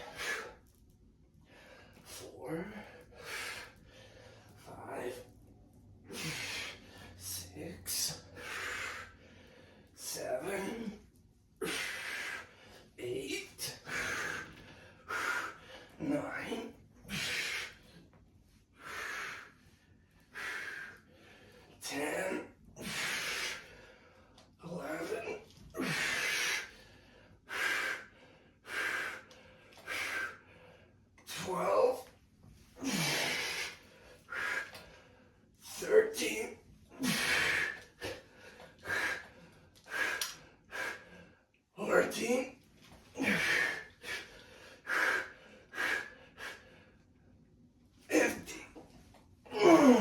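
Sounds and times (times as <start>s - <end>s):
man breathing hard and gasping: 0.0s - 42.3s, 43.0s - 47.2s.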